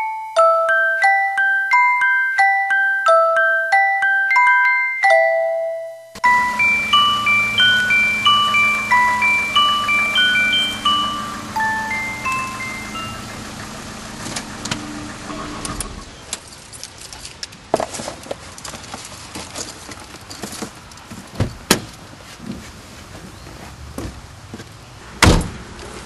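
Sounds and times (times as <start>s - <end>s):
mallet percussion music: 0.0s - 13.4s.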